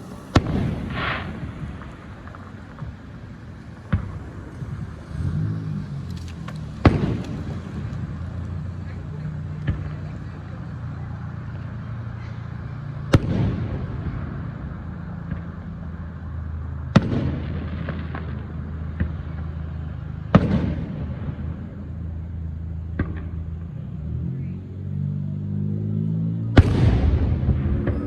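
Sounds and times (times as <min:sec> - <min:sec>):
loud sharp bangs with rumbling tail: 0:00.0 - 0:05.0, 0:06.8 - 0:07.9, 0:13.1 - 0:14.4, 0:26.6 - 0:28.0.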